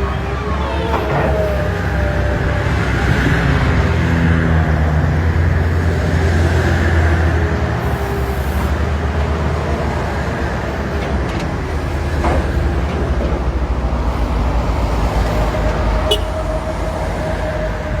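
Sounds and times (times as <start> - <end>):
heavy diesel engines rumbling: 0.0 - 18.0.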